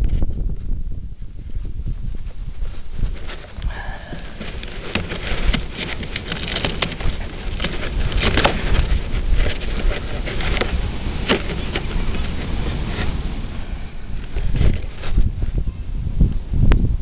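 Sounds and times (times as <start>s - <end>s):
wind buffeting microphone: 0.0s - 17.0s
sharp crackles and knocks: 2.2s - 13.4s, 14.2s - 15.6s.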